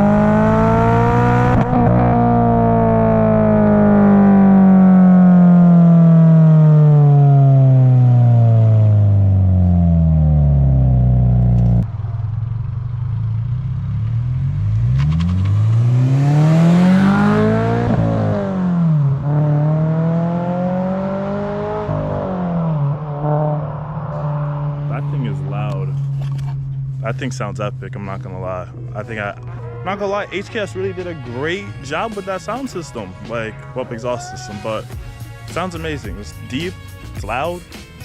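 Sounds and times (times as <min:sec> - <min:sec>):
loud deep engine exhaust revving: 0:00.0 - 0:11.9, 0:13.1 - 0:28.4.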